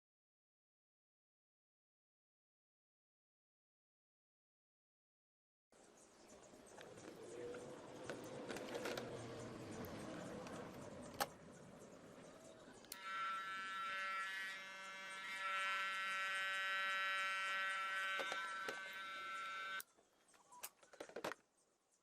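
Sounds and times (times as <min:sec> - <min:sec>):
handling noise: 0:06.8 - 0:11.3
hair clipper buzzing: 0:12.9 - 0:19.8.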